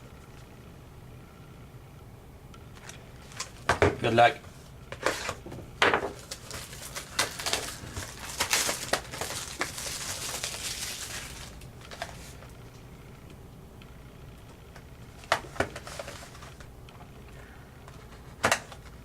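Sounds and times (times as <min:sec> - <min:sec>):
plastic wrap and cardboard rustling: 0:02.8 - 0:12.5, 0:15.2 - 0:16.7
packaging crinkled and torn open: 0:06.0 - 0:12.5, 0:15.2 - 0:16.7.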